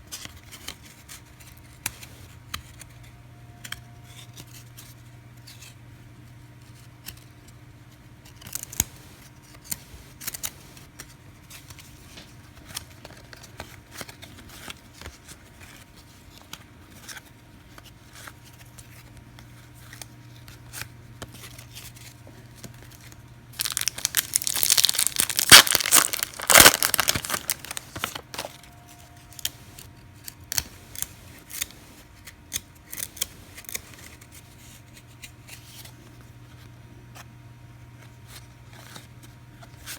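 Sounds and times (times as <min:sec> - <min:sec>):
wrapper tearing and crinkling: 0:22.9 - 0:29.5.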